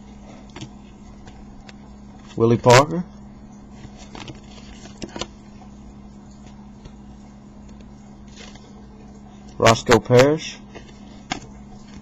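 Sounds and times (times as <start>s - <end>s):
low room hum: 0.0s - 12.0s
trading cards being handled: 3.7s - 5.4s, 7.6s - 8.8s.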